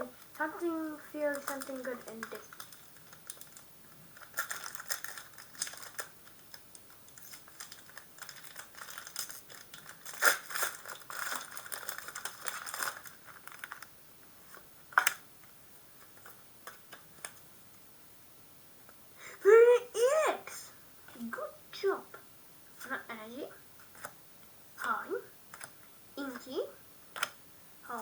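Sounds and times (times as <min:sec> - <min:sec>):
sharp packet crinkles: 0:01.2 - 0:13.9.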